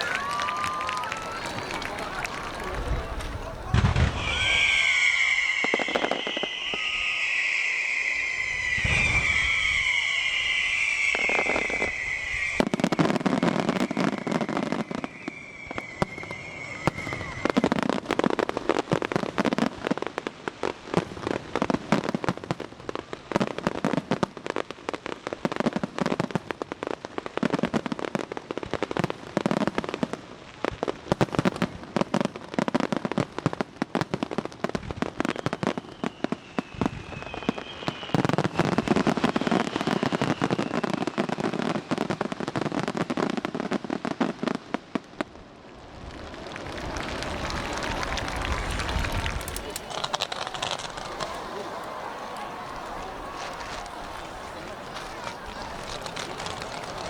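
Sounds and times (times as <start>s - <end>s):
firework whistling: 0.0s - 18.5s, 34.9s - 42.3s, 45.8s - 57.0s
firework booms: 0.0s - 19.8s, 45.2s - 57.0s
fireworks crackling: 0.0s - 57.0s.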